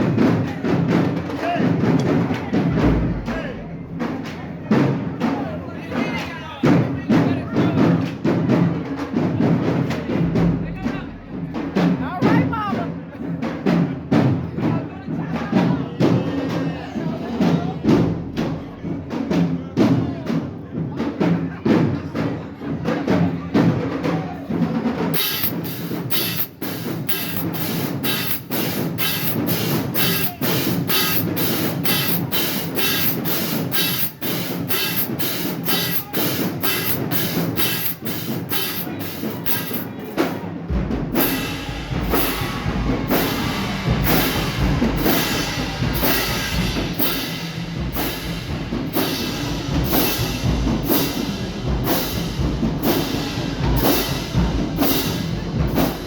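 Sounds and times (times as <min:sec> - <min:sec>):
marching snare drums: 0:00.0 - 0:56.0
deep bass drum hits: 0:40.7 - 0:47.0.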